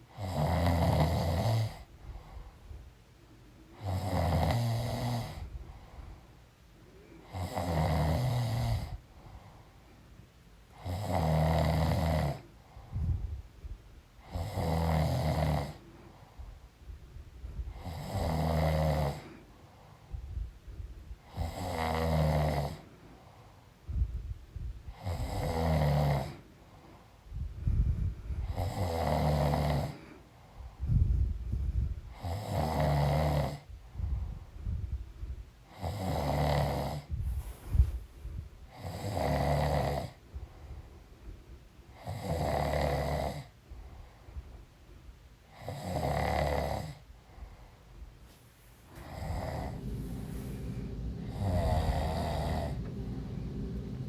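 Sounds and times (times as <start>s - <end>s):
woman snoring: 0.2s - 1.8s, 7.3s - 8.9s, 17.8s - 19.2s, 21.3s - 22.8s, 28.5s - 30.0s, 49.0s - 54.0s.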